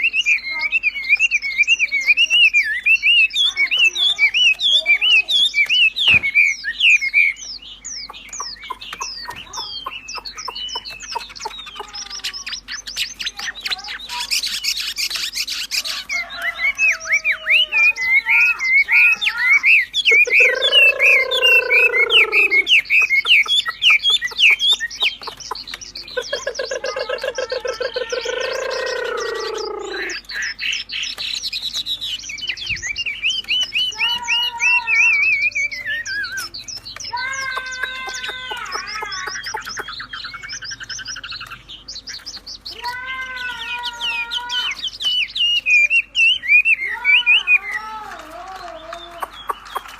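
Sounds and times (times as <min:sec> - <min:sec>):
songbird chirping: 0:00.0 - 0:49.9
harsh low bird call: 0:20.1 - 0:22.9, 0:26.2 - 0:30.2.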